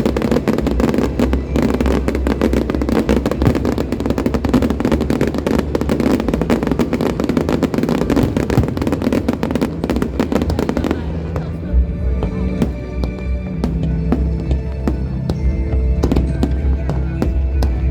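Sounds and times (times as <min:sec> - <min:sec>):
fireworks crackling bangs: 0:00.0 - 0:11.6, 0:12.3 - 0:17.9.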